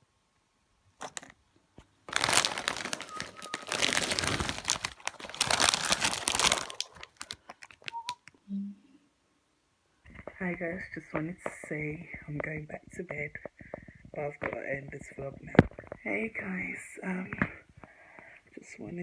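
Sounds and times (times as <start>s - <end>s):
close rustling and crinkling: 1.0s - 8.3s.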